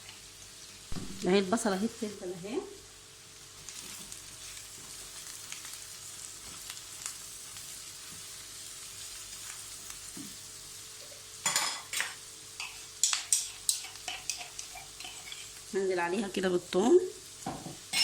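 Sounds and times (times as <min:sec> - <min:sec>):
onion sizzling in a pan: 0:00.0 - 0:18.0
spoon scraping a pan: 0:11.4 - 0:15.7, 0:17.8 - 0:18.0.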